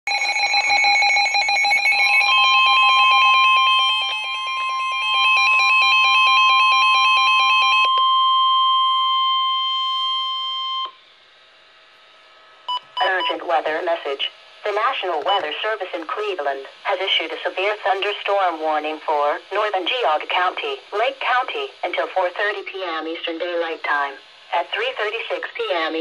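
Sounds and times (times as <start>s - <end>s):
rapidly pulsing alarm beep: 0.1s - 11.0s, 12.7s - 13.5s
steady warning alarm tone: 0.1s - 11.1s, 12.6s - 26.0s.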